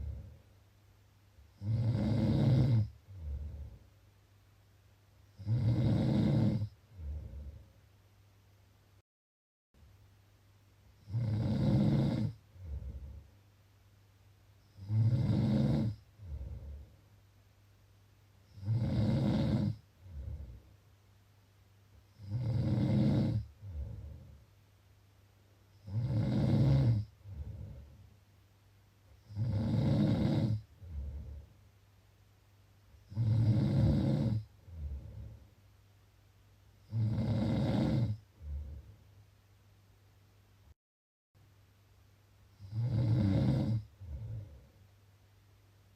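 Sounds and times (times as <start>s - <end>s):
person snoring: 0.0s - 0.4s, 1.5s - 3.8s, 5.3s - 7.7s, 11.0s - 13.2s, 14.7s - 16.9s, 18.5s - 20.6s, 22.1s - 24.4s, 25.8s - 28.0s, 29.2s - 31.5s, 33.1s - 35.4s, 36.8s - 38.9s, 42.6s - 44.7s
soft breath sound: 0.0s - 0.6s, 2.9s - 4.1s, 6.7s - 7.9s, 12.3s - 13.4s, 15.9s - 17.2s, 19.8s - 20.8s, 23.4s - 24.6s, 27.0s - 28.2s, 30.6s - 31.8s, 34.4s - 35.7s, 38.2s - 39.2s, 43.8s - 45.0s
steady low hum: 0.0s - 1.6s, 2.8s - 5.4s, 12.4s - 14.8s, 19.8s - 22.2s, 23.4s - 25.9s, 30.6s - 33.1s, 34.4s - 36.8s.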